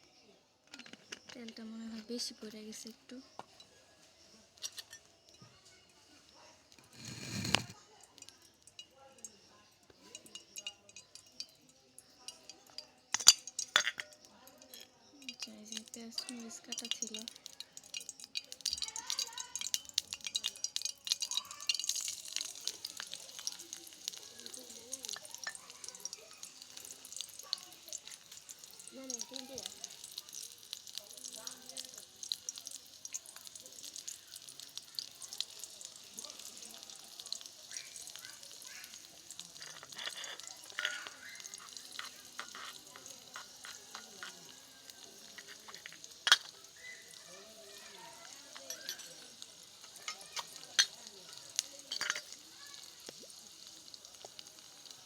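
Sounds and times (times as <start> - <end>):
onions frying in hot oil: 0.8 - 55.0
spatula knocking and scraping pan: 39.6 - 44.6.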